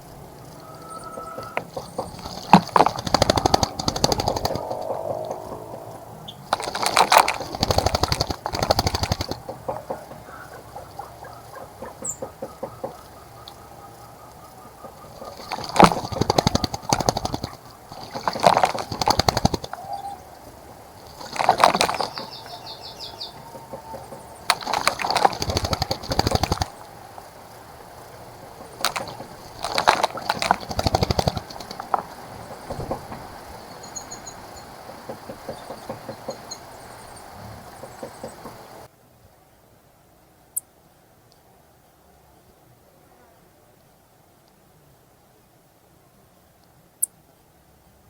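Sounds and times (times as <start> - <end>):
faint bird chirps: 0.0 - 6.6, 8.5 - 38.9
wings fluttering: 0.0 - 38.9
water splashing: 0.6 - 12.0, 15.2 - 38.9.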